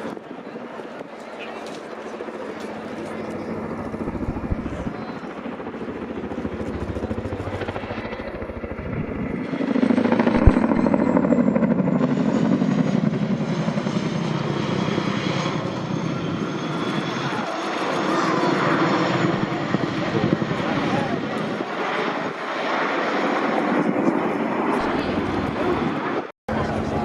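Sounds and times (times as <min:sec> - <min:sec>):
turbine noise: 0:02.5 - 0:11.5
helicopter rotor thudding: 0:02.9 - 0:13.2.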